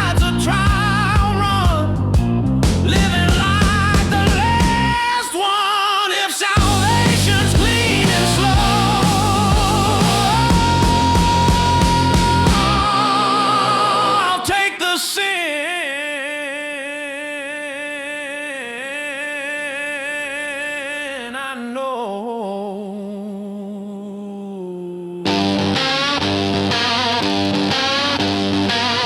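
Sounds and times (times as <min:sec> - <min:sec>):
rock band playing: 0:02.2 - 0:04.9, 0:06.6 - 0:14.6, 0:25.4 - 0:29.0
electric guitar: 0:06.6 - 0:14.8, 0:25.2 - 0:29.0.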